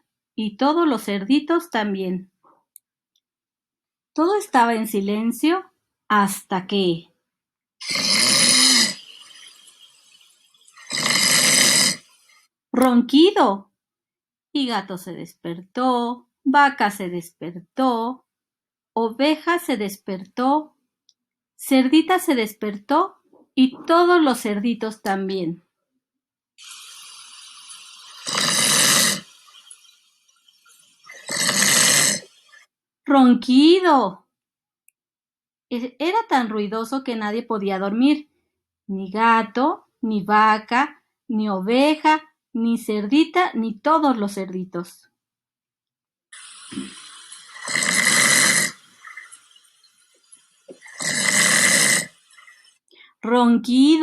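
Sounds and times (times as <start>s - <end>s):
loud snore: 7.8s - 9.5s, 10.8s - 12.4s, 26.6s - 29.7s, 31.1s - 32.7s, 46.4s - 49.4s, 50.8s - 52.6s.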